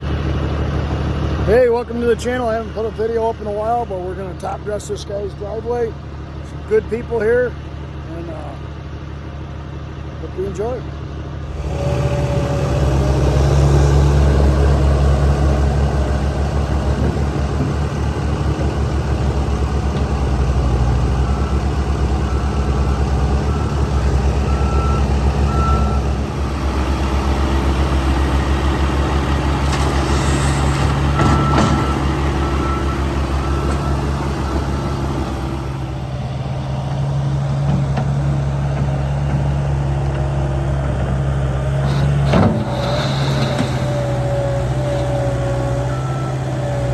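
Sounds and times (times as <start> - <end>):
diesel engine running: 0.0 - 46.9
backup alarm beeping: 22.2 - 26.2.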